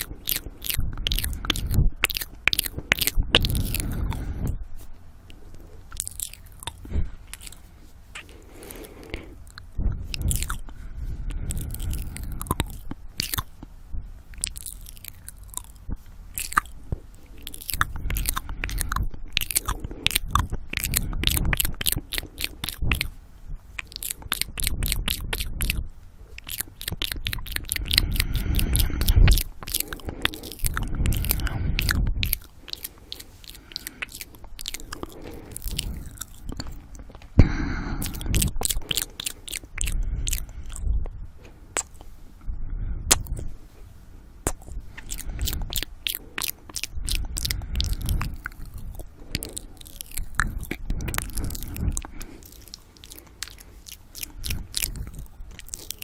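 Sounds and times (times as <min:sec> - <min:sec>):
wet tongue and lip clicks: 0:00.0 - 0:04.6, 0:05.2 - 0:42.4, 0:43.1 - 0:43.5, 0:44.4 - 0:56.0
heavy breathing into microphone: 0:03.4 - 0:05.9, 0:06.5 - 0:14.2, 0:27.6 - 0:56.0.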